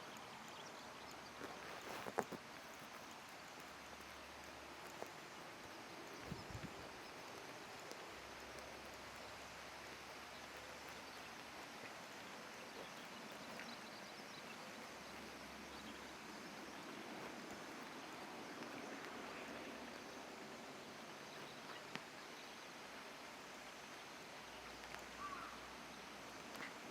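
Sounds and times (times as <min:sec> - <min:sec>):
outdoor background hiss: 0:00.0 - 0:26.9
faint clicks: 0:24.7 - 0:25.6.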